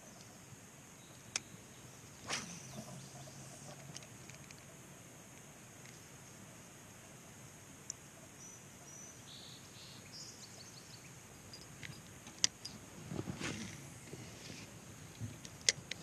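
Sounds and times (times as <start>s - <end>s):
faint bird chirps: 1.0s - 3.9s, 8.1s - 12.8s
brief rustle: 13.1s - 15.6s.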